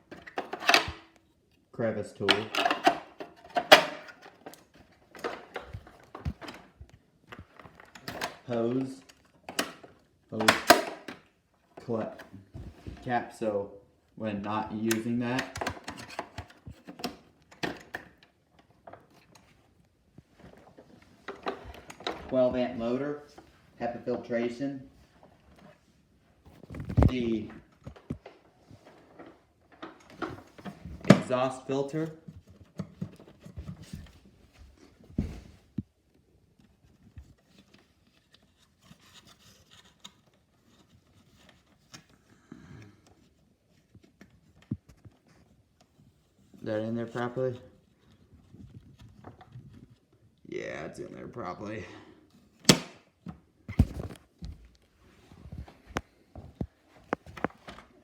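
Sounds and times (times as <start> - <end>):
plastic rubbing and clicks: 14.8 - 22.3, 26.4 - 34.3, 43.0 - 50.4
plastic thumps: 52.6 - 54.8.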